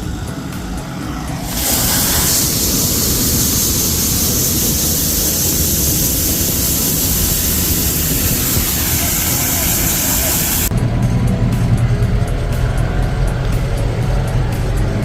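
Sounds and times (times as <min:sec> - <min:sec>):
loud steady hiss: 0:00.0 - 0:10.7
tractor diesel engine rumble: 0:00.0 - 0:15.0.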